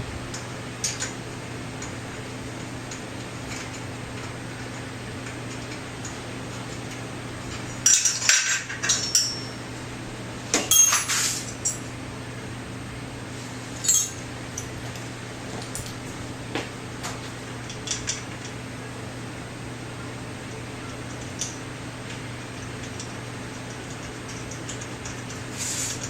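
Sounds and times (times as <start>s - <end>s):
steady low hum: 0.0s - 26.0s
metal tools clinking and clattering: 7.5s - 9.6s, 10.6s - 11.9s, 13.8s - 14.7s.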